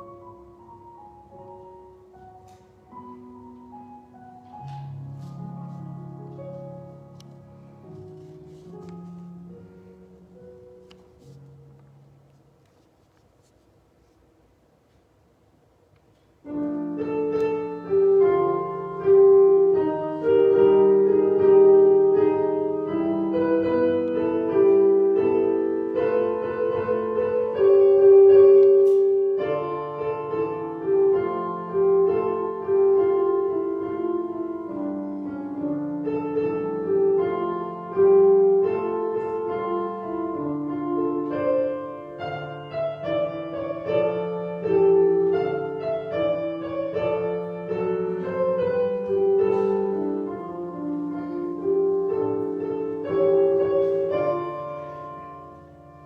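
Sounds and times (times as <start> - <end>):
slow piano piece: 0.0 - 56.0.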